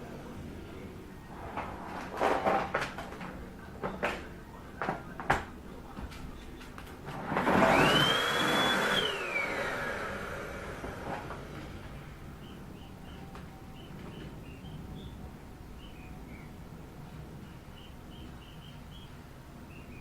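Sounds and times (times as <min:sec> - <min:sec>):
vacuum cleaner motor whine: 0:07.2 - 0:11.5.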